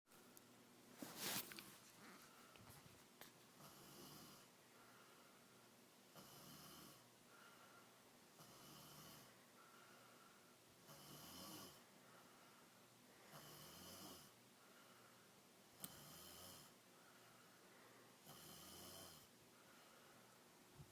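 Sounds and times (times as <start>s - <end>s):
soft breaths: 0.2s - 20.9s
person snoring: 3.6s - 4.5s, 6.2s - 7.0s, 8.4s - 9.3s, 10.8s - 11.8s, 13.3s - 14.4s, 15.8s - 16.8s, 18.2s - 19.3s.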